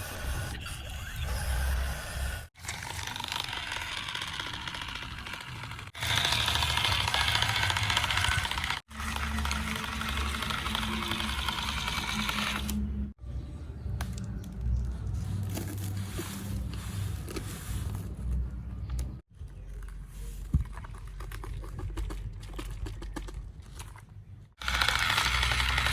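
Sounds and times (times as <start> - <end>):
toy vehicle motors whirring: 0.0 - 12.8, 24.6 - 25.9
scraping and crunching: 14.0 - 25.9.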